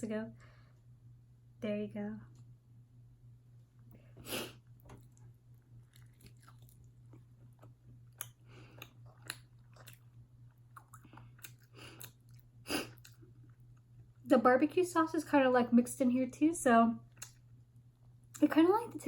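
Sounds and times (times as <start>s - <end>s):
faint low hum: 0.0s - 19.0s
chewing chicken wing: 4.9s - 13.9s.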